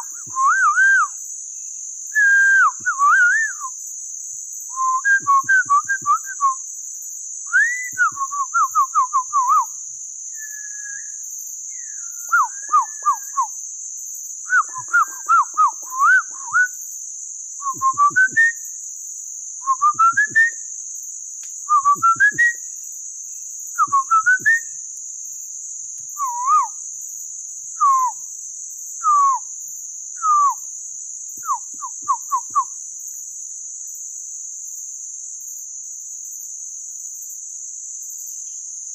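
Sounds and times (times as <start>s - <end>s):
person whistling bird calls: 0.0s - 1.2s, 2.2s - 3.8s, 4.7s - 6.6s, 7.5s - 9.8s, 10.4s - 11.2s, 11.8s - 13.6s, 14.5s - 16.7s, 17.6s - 18.6s, 19.7s - 20.6s, 21.7s - 22.6s, 23.8s - 24.7s, 26.2s - 26.8s, 27.8s - 28.2s, 29.0s - 29.5s, 30.2s - 30.6s, 31.4s - 32.7s
high insect drone: 0.0s - 38.9s.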